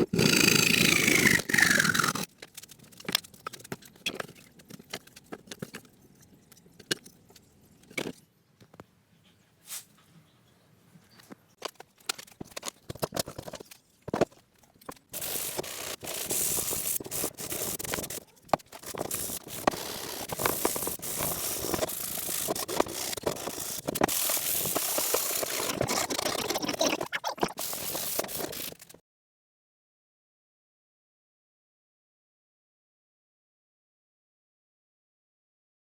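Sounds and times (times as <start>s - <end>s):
scratching and scraping noise: 0.0s - 8.2s, 9.6s - 29.0s.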